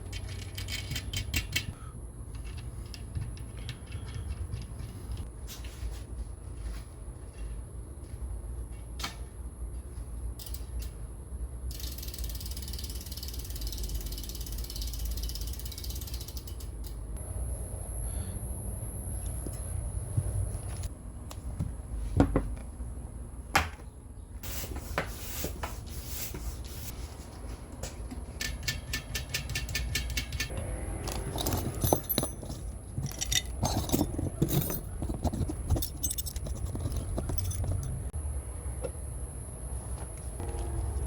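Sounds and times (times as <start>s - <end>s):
metal tools clinking and scraping: 28.4s - 38.1s.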